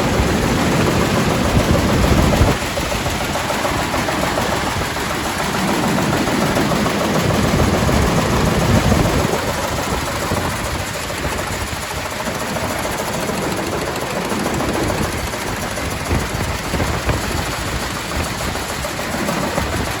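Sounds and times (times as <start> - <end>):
grain cleaner rattling: 0.0 - 20.0.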